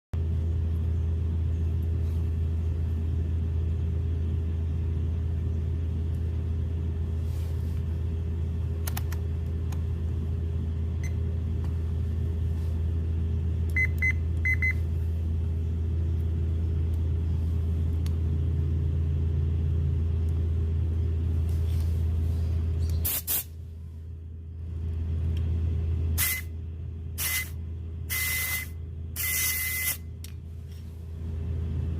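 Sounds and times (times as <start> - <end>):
car engine idling: 0.2 - 28.1
sharp click: 8.8 - 9.8
short high beeps: 28.1 - 30.0.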